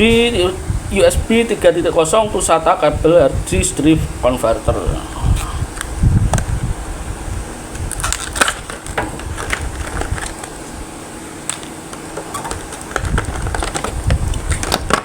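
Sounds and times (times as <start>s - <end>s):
plastic packaging crinkling: 7.8s - 10.8s, 11.4s - 15.0s.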